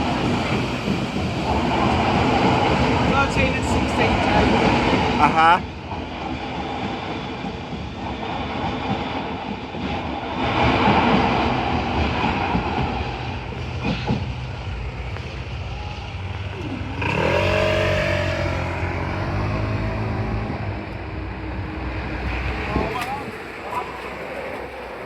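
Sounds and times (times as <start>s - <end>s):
road traffic rumble: 12.8s - 25.0s
vehicle engine accelerating: 16.0s - 22.0s.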